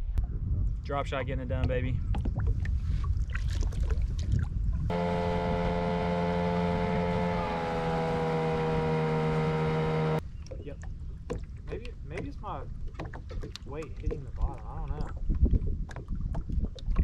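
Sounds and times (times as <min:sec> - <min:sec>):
wind: 0:00.0 - 0:17.0
boat motor humming: 0:04.9 - 0:10.2.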